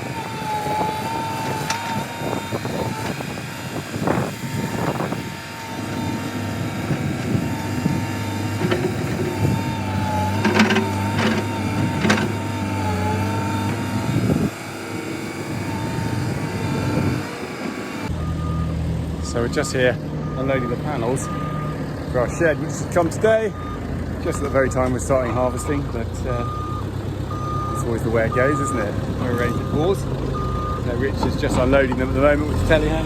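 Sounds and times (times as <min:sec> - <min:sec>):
wavering whine: 0:00.0 - 0:12.3, 0:13.4 - 0:21.4
machine engine running: 0:00.0 - 0:24.3.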